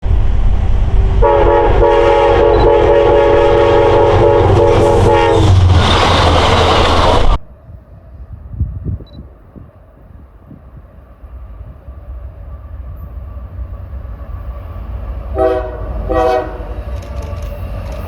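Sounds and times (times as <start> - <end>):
diesel train rumbling past: 0.0 - 18.0
rushing noise of passing train: 0.0 - 18.0
locomotive multi-note horn: 1.2 - 5.7, 15.3 - 17.7.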